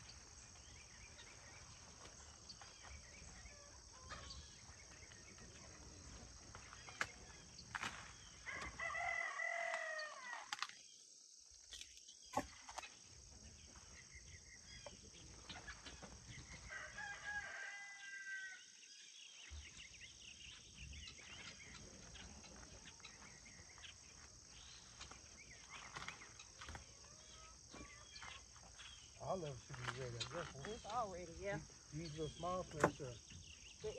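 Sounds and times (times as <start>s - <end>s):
insects droning: 0.0s - 33.9s
rooster crowing: 8.4s - 10.5s, 16.7s - 18.6s.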